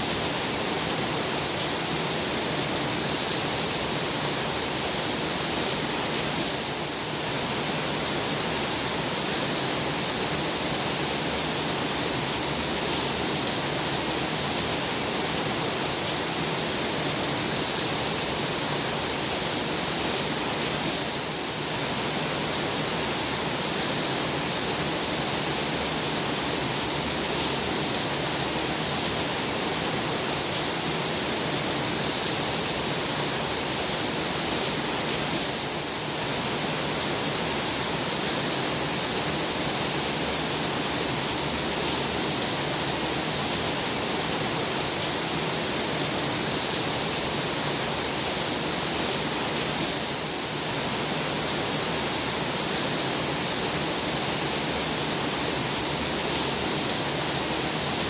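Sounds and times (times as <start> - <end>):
heavy rain pouring: 0.0 - 58.0.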